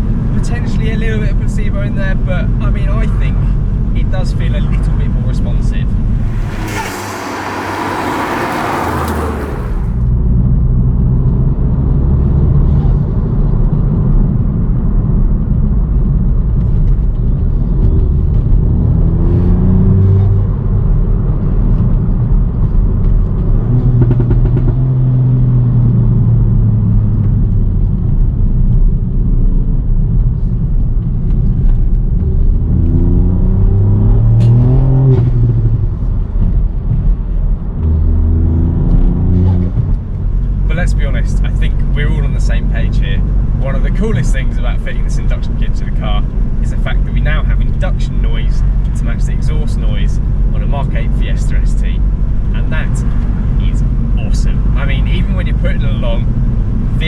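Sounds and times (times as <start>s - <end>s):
car engine accelerating: 5.7s - 10.3s, 30.0s - 57.0s
loud rushing hiss: 6.2s - 10.0s.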